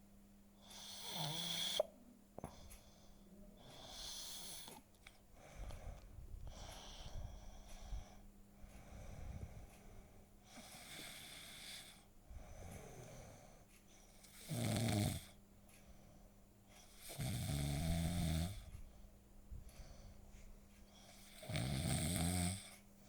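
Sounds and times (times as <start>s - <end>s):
cat snoring: 0.6s - 1.9s, 3.7s - 4.8s, 10.6s - 12.0s, 14.4s - 15.4s, 17.0s - 18.7s, 21.0s - 22.7s.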